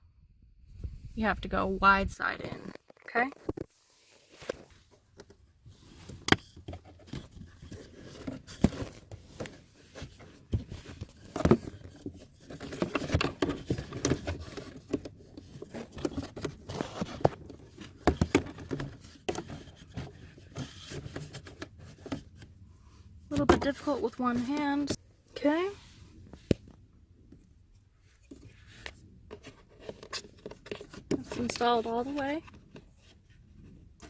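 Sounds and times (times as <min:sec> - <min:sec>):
filter scraping against plastic: 0:28.3 - 0:33.2.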